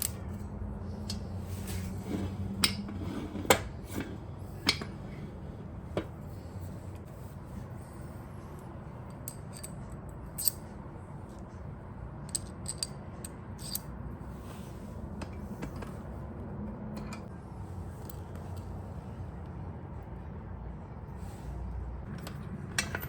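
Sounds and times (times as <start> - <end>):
metal tools clinking: 9.1 - 10.7, 12.2 - 14.0.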